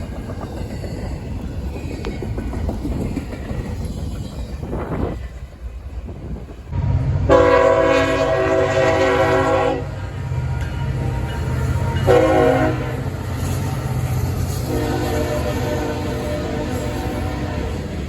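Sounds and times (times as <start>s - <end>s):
locomotive air horn blasts: 7.3s - 13.2s, 14.6s - 18.0s.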